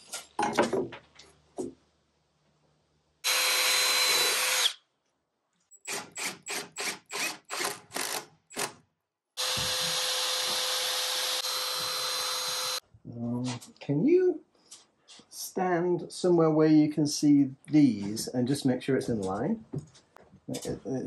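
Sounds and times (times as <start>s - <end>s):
power drill drilling into wood: 3.2s - 4.8s, 5.8s - 8.8s, 9.4s - 12.8s.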